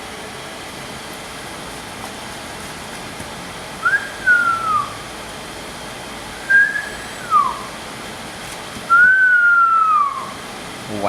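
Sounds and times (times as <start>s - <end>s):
low room hum: 0.0s - 11.0s
person whistling: 3.8s - 5.0s, 6.4s - 7.7s, 8.9s - 10.4s.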